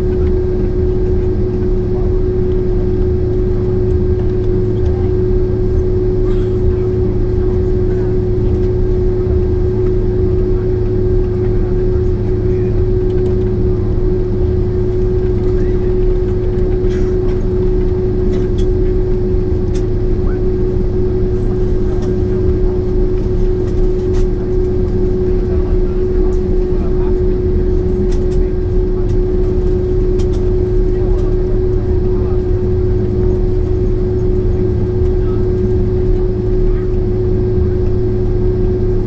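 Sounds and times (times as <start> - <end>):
low engine rumble: 0.0 - 39.0
mid-pitched cabin hum: 0.0 - 39.0.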